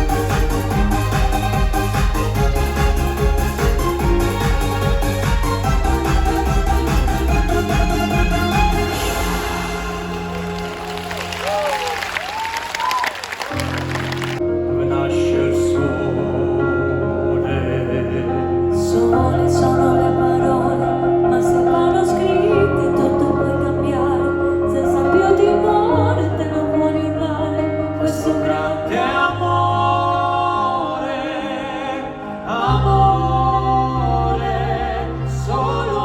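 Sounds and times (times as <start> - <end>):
orchestral backing: 0.0 - 12.4
operatic singing: 13.5 - 36.0.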